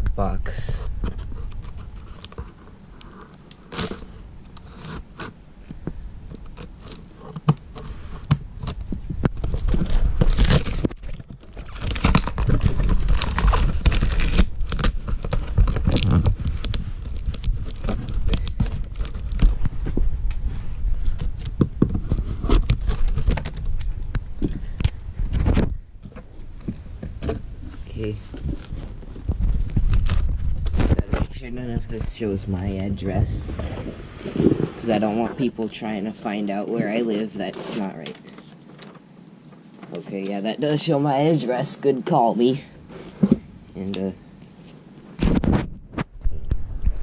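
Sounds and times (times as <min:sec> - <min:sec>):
cardboard scraping and rustling: 0:00.5 - 0:23.7, 0:25.3 - 0:40.4, 0:41.1 - 0:46.4
packing tape tearing: 0:01.4 - 0:05.4, 0:06.3 - 0:19.7, 0:21.0 - 0:23.9, 0:28.0 - 0:31.0.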